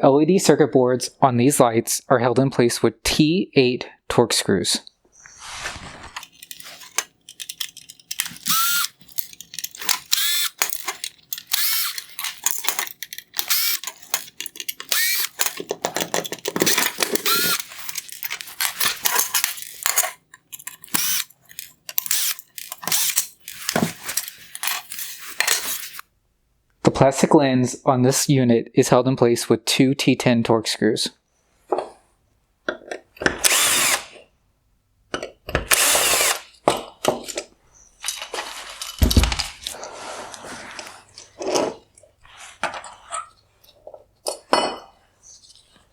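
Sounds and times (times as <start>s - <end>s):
screwdriver clicks and scrapes: 5.6s - 26.1s, 33.4s - 34.0s
small metal clinks: 6.2s - 26.0s.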